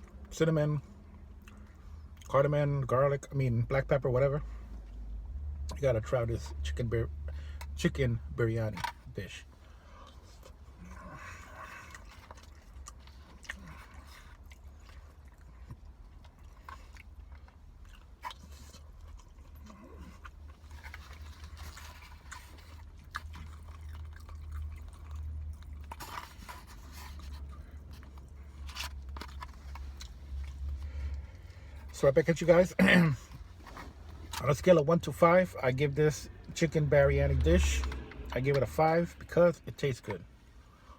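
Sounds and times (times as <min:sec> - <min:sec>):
steady low hum: 0:07.3 - 0:40.9
person chewing food: 0:09.8 - 0:31.9.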